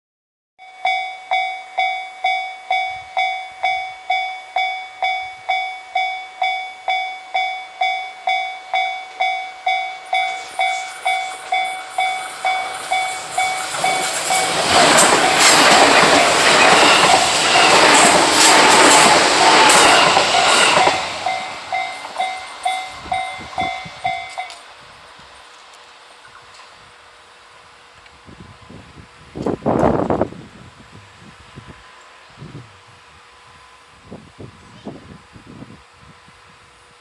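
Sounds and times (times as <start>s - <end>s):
level-crossing warning bell dinging: 0.6s - 27.9s
train wheels clattering over rail joints: 10.4s - 24.7s.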